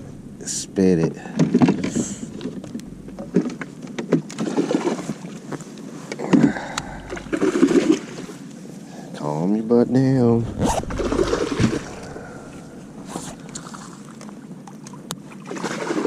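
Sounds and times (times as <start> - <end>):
fish thrashing in a boat: 1.2 - 8.4, 10.7 - 16.0.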